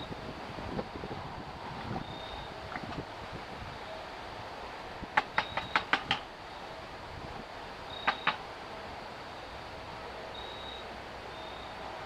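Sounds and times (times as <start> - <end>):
wind buffeting microphone: 0.0 - 8.9.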